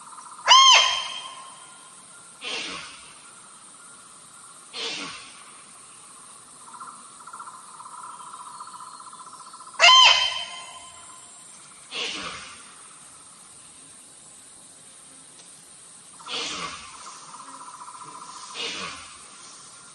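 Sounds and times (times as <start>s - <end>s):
female deer calls: 0.5s - 1.6s, 9.8s - 11.1s.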